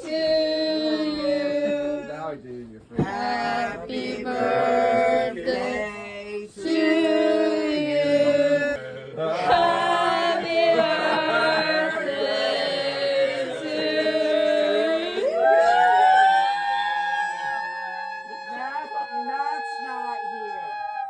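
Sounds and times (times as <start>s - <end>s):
song with sung vocals: 2.8s - 15.6s.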